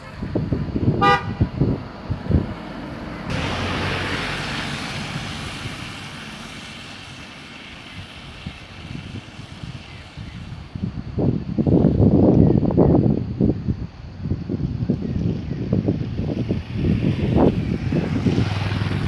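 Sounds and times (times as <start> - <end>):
vehicle rushing past: 0.0 - 10.7, 15.9 - 19.0
wind buffeting microphone: 0.0 - 19.0.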